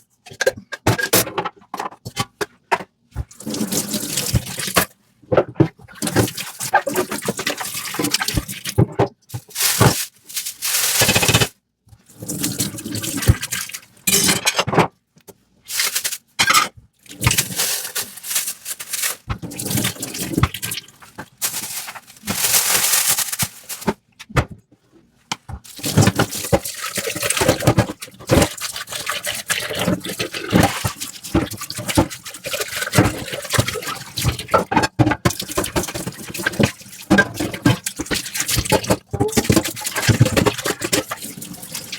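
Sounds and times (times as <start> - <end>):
tap water running onto dishes: 25.6 - 41.9.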